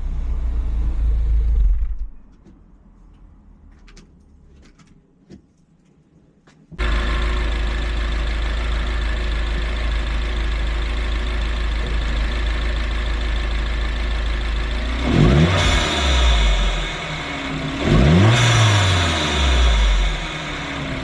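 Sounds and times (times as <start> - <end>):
car engine idling and revving: 0.0 - 4.9, 6.8 - 21.0.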